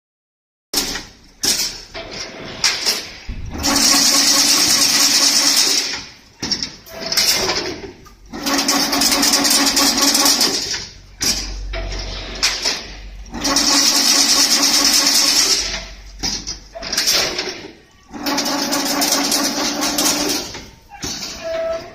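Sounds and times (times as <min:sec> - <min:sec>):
machine clanks and clicks: 0:00.8 - 0:21.9
fence weaving machine whirring: 0:01.9 - 0:21.9.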